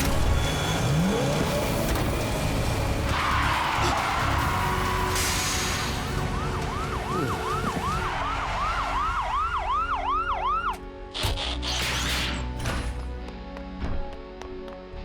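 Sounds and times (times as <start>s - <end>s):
police siren yelping: 6.0s - 10.8s.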